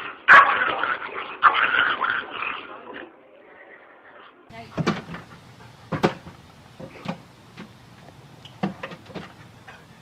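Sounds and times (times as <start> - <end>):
sharp knocks: 5.9 - 7.7.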